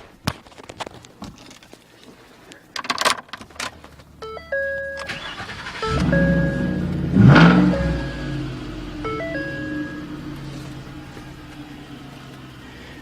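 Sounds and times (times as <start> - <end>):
clicks and rattles in cab: 2.7 - 4.0
electronic startup chime: 4.2 - 10.3.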